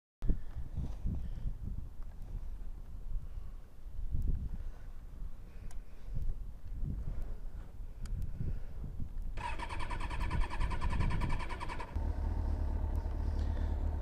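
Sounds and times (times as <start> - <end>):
motorcycle electric starter cranking: 9.4 - 12.4
steady low hum: 11.6 - 14.0.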